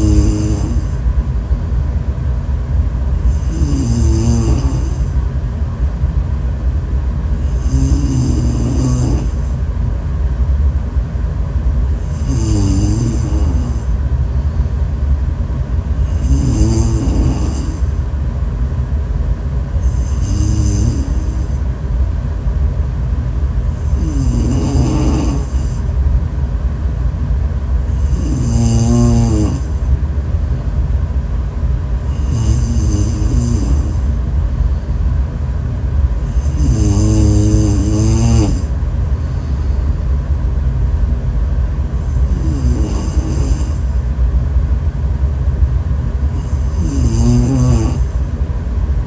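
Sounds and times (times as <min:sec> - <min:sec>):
person snoring: 0:00.0 - 0:01.0, 0:03.2 - 0:05.2, 0:07.4 - 0:09.5, 0:12.0 - 0:13.9, 0:16.0 - 0:18.0, 0:19.8 - 0:21.6, 0:23.7 - 0:25.8, 0:27.9 - 0:29.8, 0:32.1 - 0:34.2, 0:36.2 - 0:39.8, 0:42.0 - 0:43.9, 0:46.3 - 0:48.2
steady low rumble: 0:00.0 - 0:49.0.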